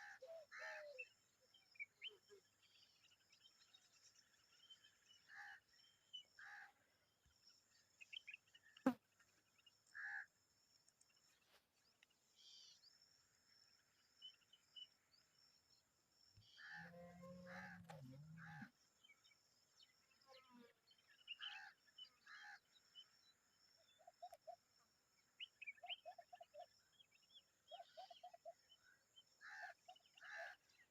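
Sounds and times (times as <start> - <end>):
birds calling with harsh chirps: 0.0 - 6.7.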